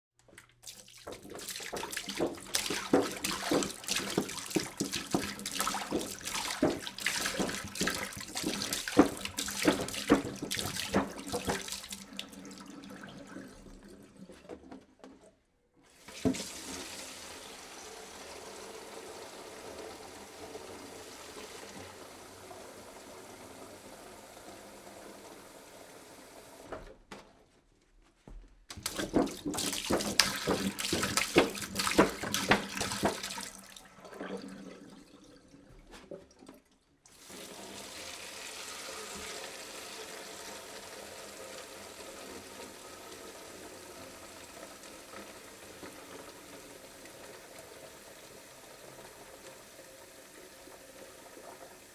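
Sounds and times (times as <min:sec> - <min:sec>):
splashing pour: 0:00.3 - 0:14.2, 0:15.9 - 0:25.2, 0:28.7 - 0:51.9
water pouring from a jug: 0:00.3 - 0:14.4, 0:28.7 - 0:40.7.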